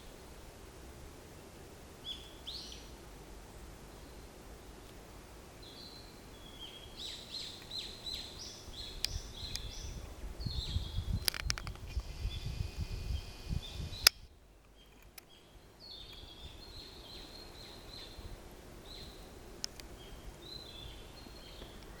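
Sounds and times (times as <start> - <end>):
birds singing and calling: 5.6 - 22.0
sharp click: 11.2 - 12.1, 14.0 - 15.3.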